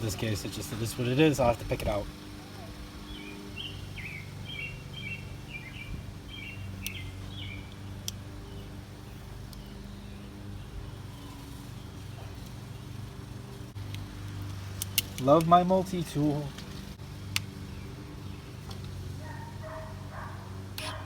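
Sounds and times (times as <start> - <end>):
low background hum: 0.0 - 21.0
small birds chirping: 0.0 - 21.0
sharp clicks: 7.7 - 8.3, 16.6 - 17.6.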